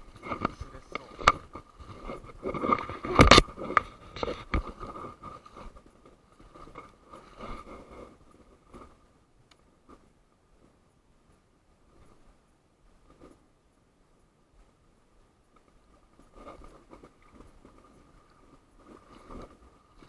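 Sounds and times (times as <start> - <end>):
scraping and rustling close up: 0.0 - 9.1, 15.9 - 20.0.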